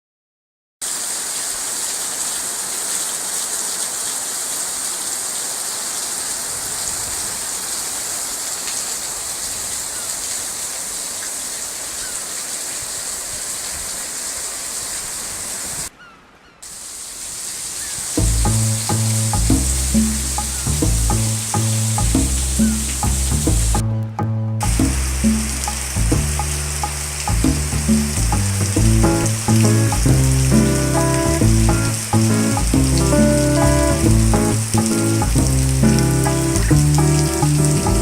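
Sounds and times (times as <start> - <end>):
steady rain falling: 0.8 - 23.8, 24.6 - 38.0
music with bass line: 18.2 - 38.0.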